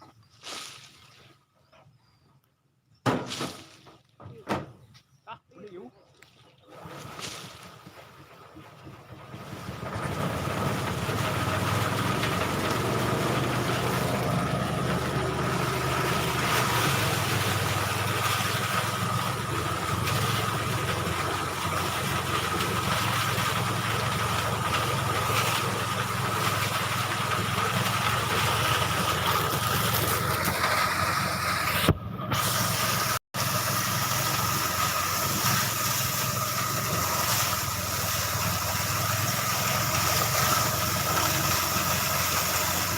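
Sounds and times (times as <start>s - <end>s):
threshing machine engine drone: 8.8s - 42.9s.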